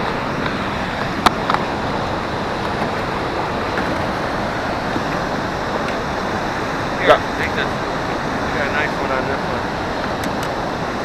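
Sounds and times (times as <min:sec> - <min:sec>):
river water rushing: 0:00.0 - 0:11.0
sharp clicks: 0:10.0 - 0:10.6.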